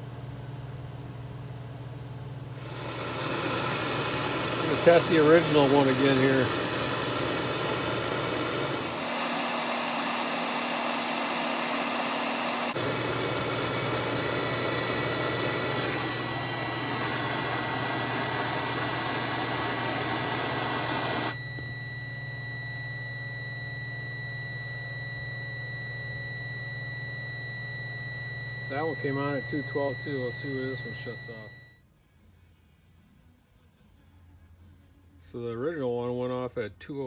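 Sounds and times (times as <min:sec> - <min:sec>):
meter continuity beep: 0:11.8 - 0:31.8.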